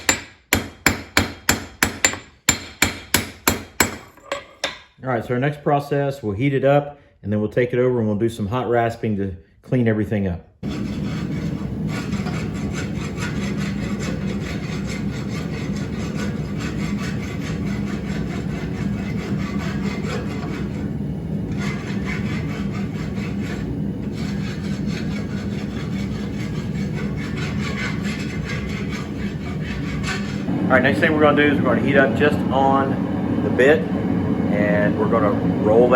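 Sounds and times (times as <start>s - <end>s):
hand rasp scraping steel: 0.0s - 4.7s, 10.6s - 30.5s
steady low hum: 10.6s - 35.9s.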